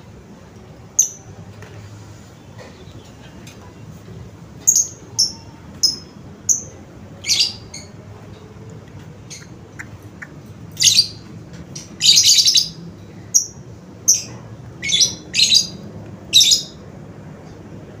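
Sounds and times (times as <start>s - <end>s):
bird chirping: 4.6s - 8.0s, 9.2s - 11.2s, 11.8s - 16.8s.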